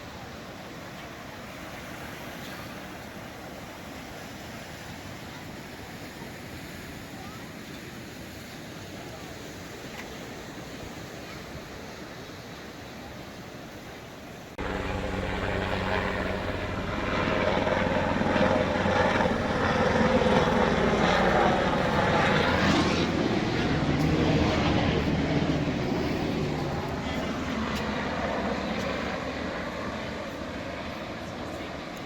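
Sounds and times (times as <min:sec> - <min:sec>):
propeller aircraft engine drone: 0:14.4 - 0:32.0.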